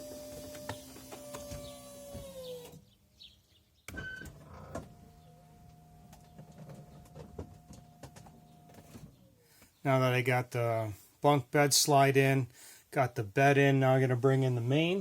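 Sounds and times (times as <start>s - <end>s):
electric motor whine: 0.0s - 2.8s.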